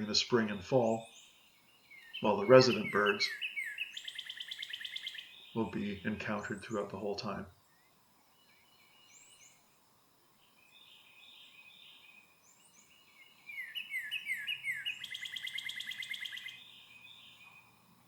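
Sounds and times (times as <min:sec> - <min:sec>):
songbirds singing: 0:00.0 - 0:18.0
bird whistles and rattling trill: 0:02.8 - 0:05.3, 0:13.5 - 0:16.6.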